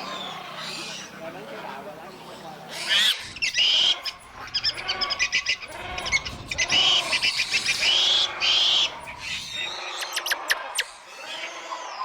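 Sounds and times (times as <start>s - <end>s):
monkeys squealing and chattering: 2.7s - 12.0s.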